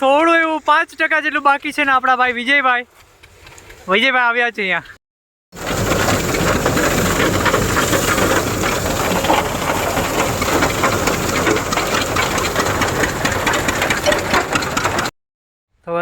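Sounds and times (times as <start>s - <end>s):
thresher clattering and rattling: 5.6s - 15.1s.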